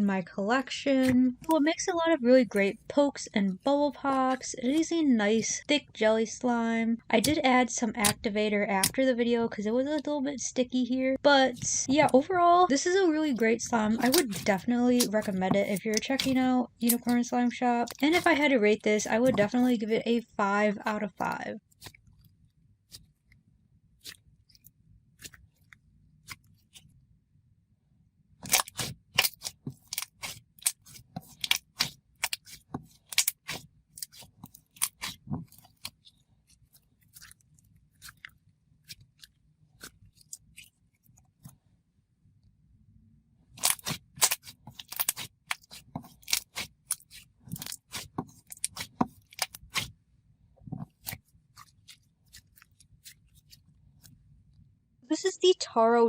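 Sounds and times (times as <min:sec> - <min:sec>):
slime squishing wet pops: 0:13.2 - 0:17.3, 0:43.6 - 0:49.9.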